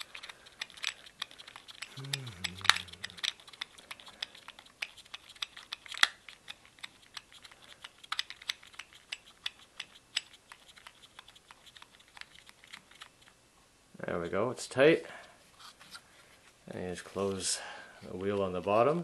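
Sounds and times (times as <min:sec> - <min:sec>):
pistol wheel clicking: 0:00.0 - 0:13.1.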